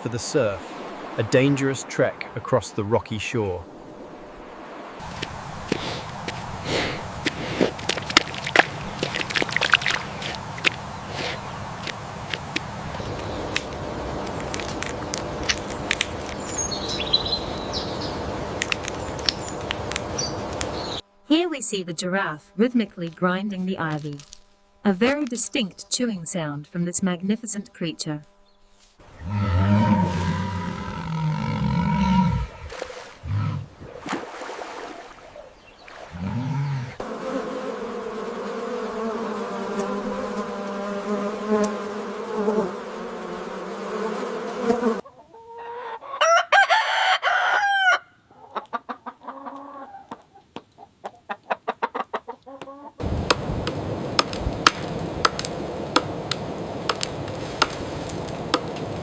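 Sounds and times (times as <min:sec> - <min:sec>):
chicken clucks: 0:45.0 - 0:46.3, 0:48.3 - 0:53.0
rooster crowing: 0:45.5 - 0:48.2.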